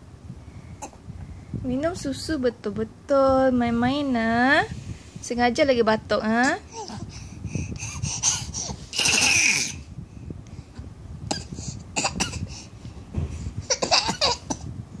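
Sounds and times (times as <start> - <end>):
baby coughing: 0.8 - 1.0, 8.9 - 9.8, 11.3 - 12.5, 13.6 - 14.7.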